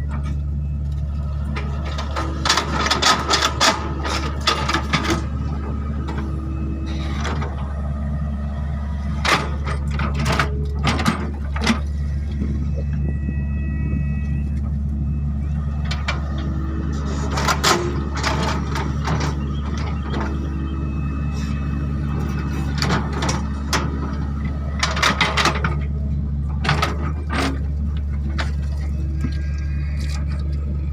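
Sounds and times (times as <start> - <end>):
diesel engine under load: 0.0 - 30.9.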